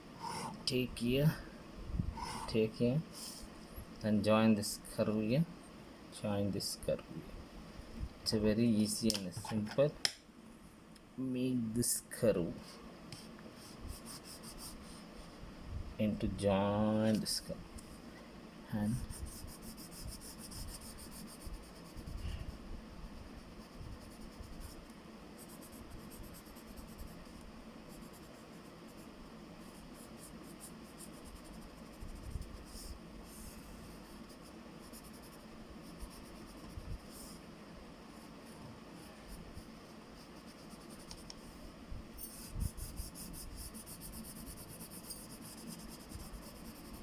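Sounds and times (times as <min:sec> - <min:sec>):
pencil scratching on paper: 0:13.2 - 0:15.0, 0:18.9 - 0:22.3, 0:23.4 - 0:24.8, 0:25.4 - 0:37.4, 0:39.3 - 0:41.3, 0:42.2 - 0:47.0.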